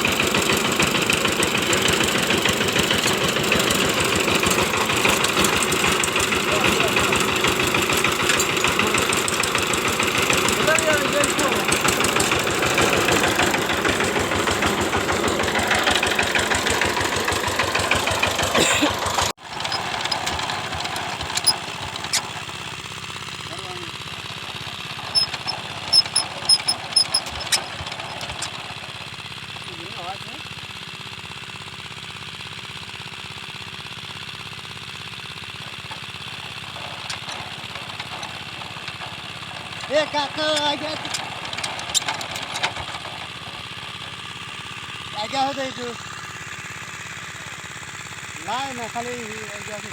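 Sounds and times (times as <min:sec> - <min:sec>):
diesel engine knocking: 0:00.0 - 0:49.9
quieter running sound: 0:00.5 - 0:22.7.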